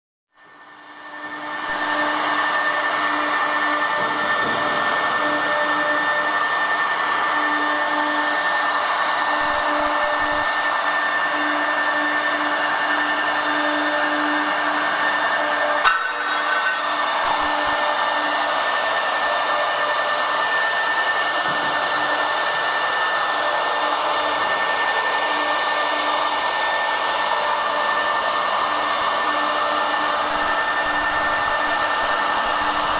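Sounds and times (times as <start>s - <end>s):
router spindles whining: 0.4s - 32.9s.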